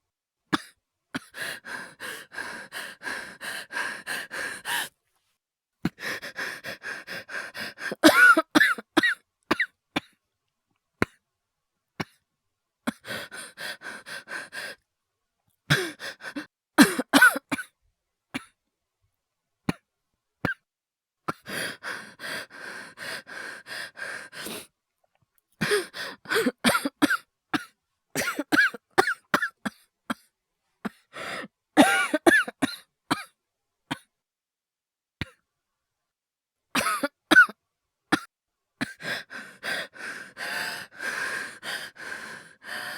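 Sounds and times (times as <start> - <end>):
strained wheezing breaths: 0.6 - 5.0, 5.9 - 8.1, 12.9 - 14.8, 15.7 - 16.5, 21.3 - 24.7, 25.6 - 26.9, 38.8 - 42.9
person coughing harshly: 7.9 - 9.7, 16.8 - 17.7, 25.7 - 30.2, 31.8 - 33.3, 36.8 - 37.6.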